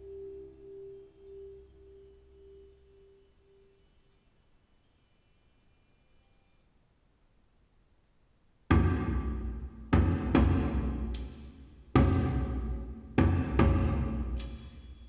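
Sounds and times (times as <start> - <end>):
shimmering chime-like high notes: 0.0 - 6.7, 14.4 - 15.0.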